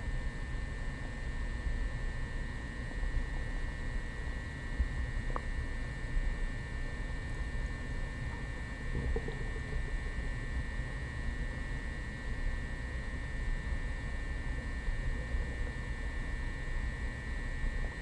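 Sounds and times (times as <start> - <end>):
electrical hum and hiss: 0.0 - 18.0
stomach rumbling: 4.7 - 5.7, 6.8 - 11.6, 14.2 - 16.6.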